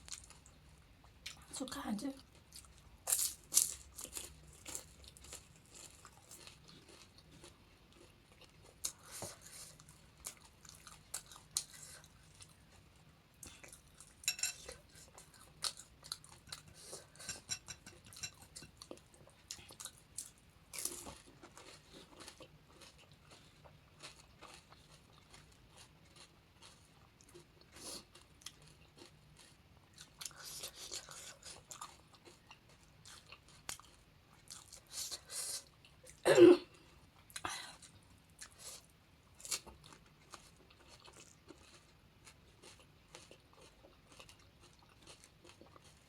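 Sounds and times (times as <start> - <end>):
crisp food crunching: 2.4 - 12.5, 19.8 - 35.0, 39.4 - 46.0.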